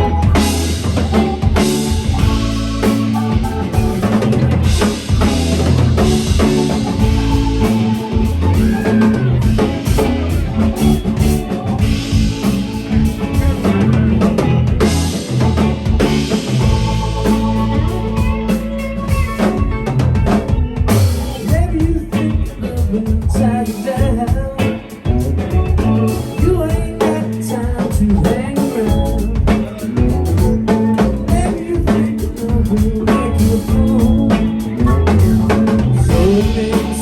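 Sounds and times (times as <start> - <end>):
person singing: 0.0 - 11.9, 21.2 - 37.0
bass line: 0.0 - 37.0
drum kit with rimshots: 0.0 - 37.0
guitar: 0.0 - 37.0.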